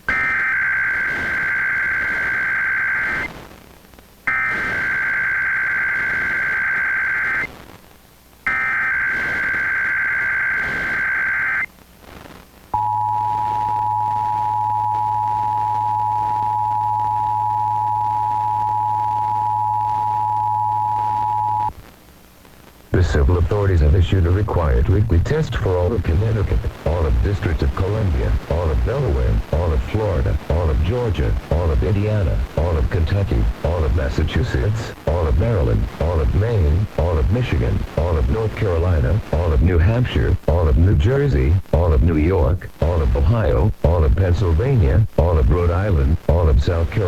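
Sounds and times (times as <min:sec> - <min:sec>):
digital data tone bursts: 0:08.5 - 0:11.7
steady two-tone attention signal: 0:12.8 - 0:21.7.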